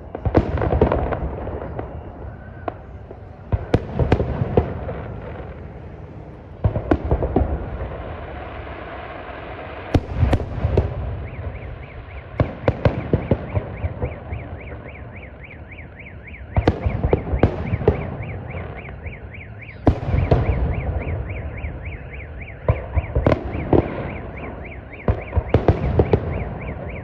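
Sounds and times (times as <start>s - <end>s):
fireworks bangs: 0.0s - 27.0s.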